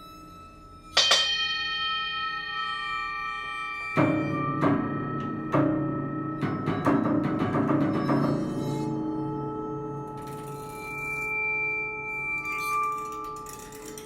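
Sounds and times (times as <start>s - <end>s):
struck prepared piano notes: 1.0s - 11.0s.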